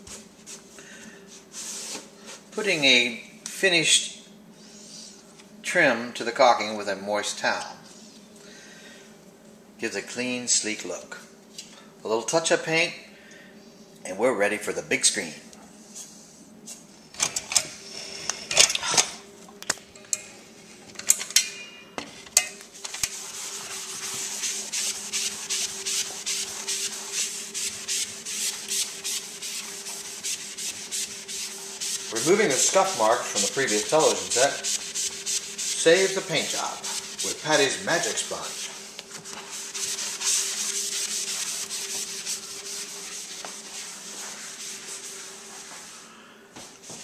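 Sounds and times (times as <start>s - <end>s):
sponge scrubbing painted trim: 22.8s - 46.0s.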